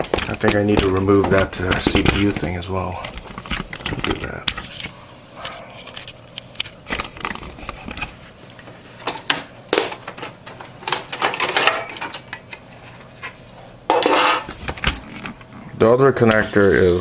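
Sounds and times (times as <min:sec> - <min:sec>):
plastic scraping and rattling: 0:00.0 - 0:04.9, 0:05.8 - 0:08.2.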